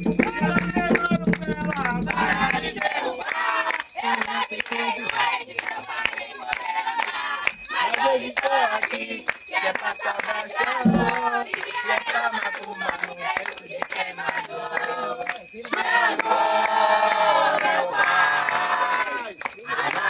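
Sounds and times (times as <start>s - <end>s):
sharp percussive strikes: 0.0s - 4.3s, 10.6s - 12.0s
jingling percussion: 0.0s - 20.0s
voices singing: 0.0s - 20.0s.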